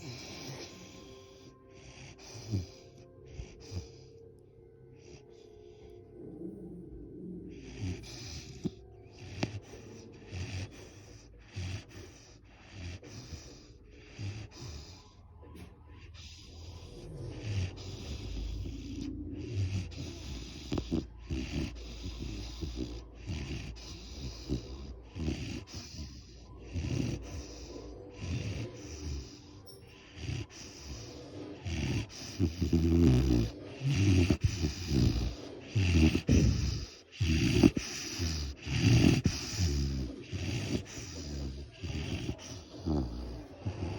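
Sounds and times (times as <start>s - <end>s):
dog breathing: 0.0s - 43.9s
faint background music: 0.0s - 43.9s.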